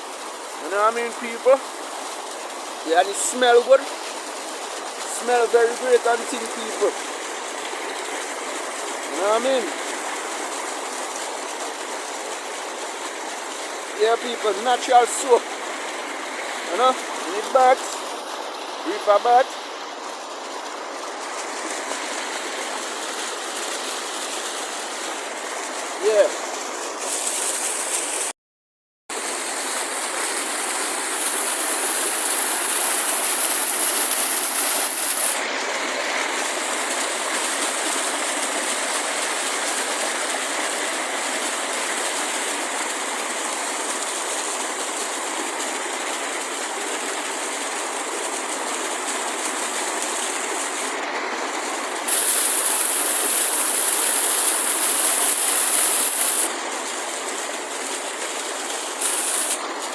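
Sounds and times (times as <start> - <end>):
river water rushing: 29.2 - 35.4.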